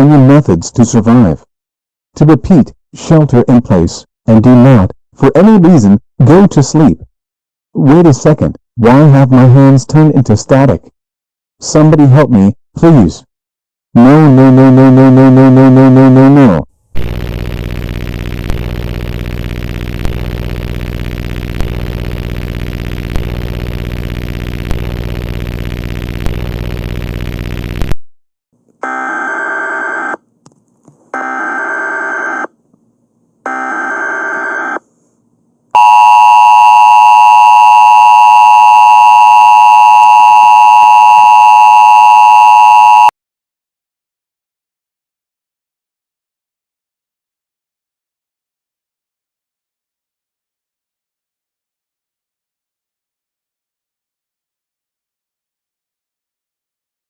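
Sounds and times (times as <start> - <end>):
loud buzzing static: 17.0 - 28.0
two-tone attention signal: 35.8 - 43.1.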